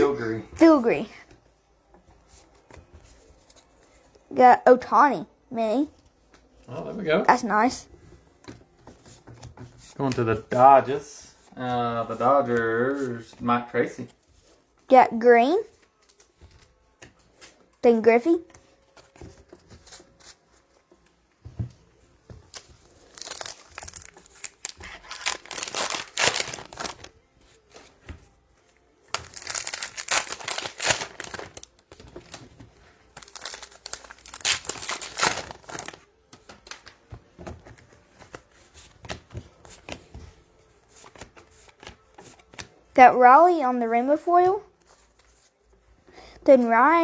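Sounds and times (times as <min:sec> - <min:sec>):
cards clicking and rustling: 0:22.3 - 0:42.8
wrapper tearing and crinkling: 0:22.5 - 0:27.2, 0:29.1 - 0:32.4, 0:33.1 - 0:36.1.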